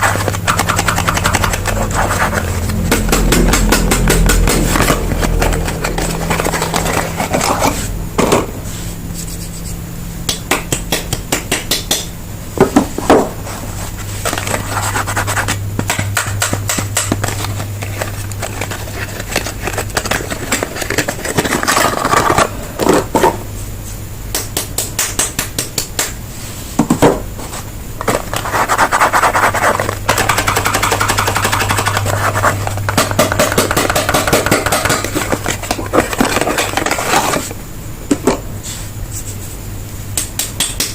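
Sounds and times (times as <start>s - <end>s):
packaging rustling and scraping: 0.0s - 8.0s, 13.4s - 15.6s, 17.1s - 23.1s, 27.4s - 37.6s.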